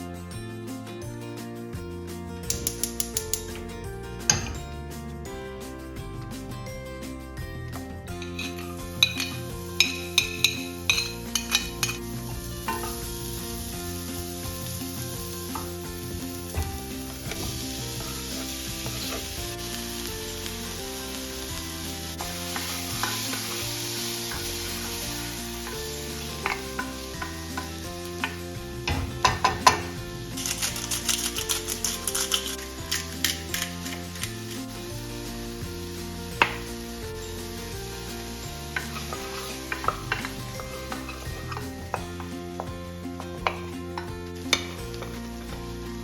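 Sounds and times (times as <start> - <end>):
utensil clicking against pan: 2.5 - 3.6
egg sizzling in a frying pan: 8.1 - 42.8, 43.4 - 46.0.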